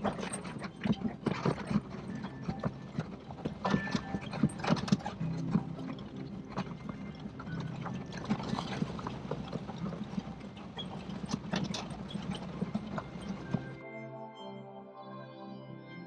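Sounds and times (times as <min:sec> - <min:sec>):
rattles and knocks in cab: 0:00.0 - 0:13.8.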